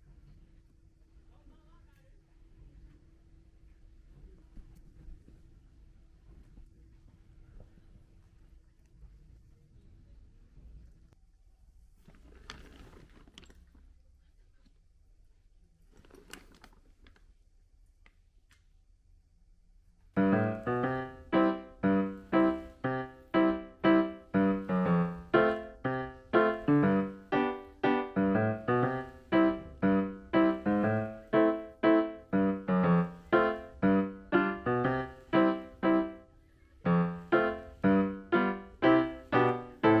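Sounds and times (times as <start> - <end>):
piano music: 20.2 - 40.0.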